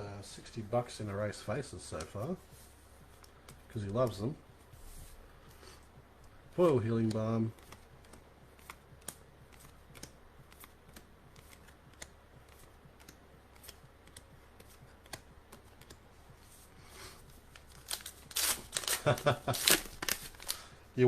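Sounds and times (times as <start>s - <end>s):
trading cards clicking and tapping: 0.5s - 4.7s, 5.5s - 16.6s.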